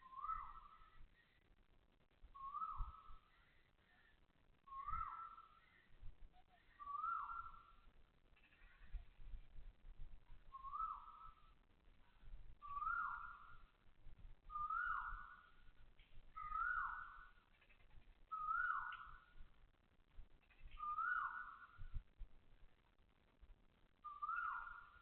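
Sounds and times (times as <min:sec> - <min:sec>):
bird calling whistled notes: 0:00.0 - 0:01.0, 0:02.4 - 0:03.6, 0:04.7 - 0:05.9, 0:06.6 - 0:07.8, 0:10.5 - 0:11.5, 0:12.6 - 0:13.7, 0:14.5 - 0:15.6, 0:16.3 - 0:19.3, 0:20.5 - 0:22.0, 0:24.0 - 0:25.0.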